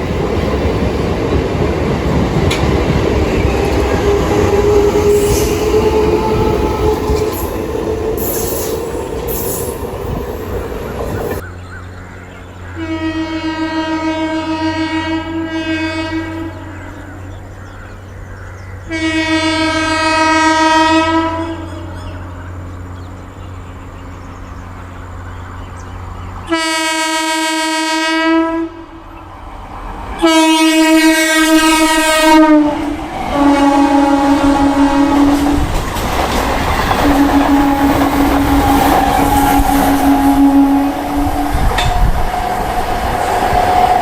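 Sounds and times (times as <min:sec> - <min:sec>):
train wheels clattering over rail joints: 0:00.0 - 0:11.4, 0:35.3 - 0:39.8, 0:41.5 - 0:44.0
train air horn blasts: 0:03.6 - 0:07.6, 0:12.8 - 0:17.0, 0:18.9 - 0:22.2, 0:26.5 - 0:29.1, 0:30.2 - 0:35.7, 0:37.0 - 0:42.3.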